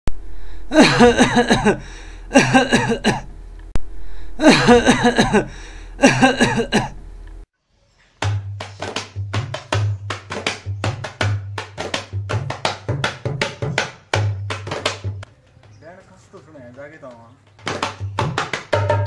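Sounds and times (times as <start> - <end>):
steady low hum: 0.1 - 7.5
person coughing: 0.7 - 3.3, 4.4 - 7.0
tabla music: 8.2 - 15.2, 17.8 - 19.0.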